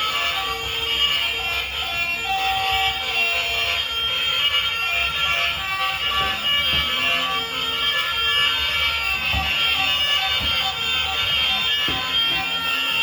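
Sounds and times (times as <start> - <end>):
tinny electronic alarm tones: 5.0 - 13.0
soft low knocks: 8.4 - 12.9.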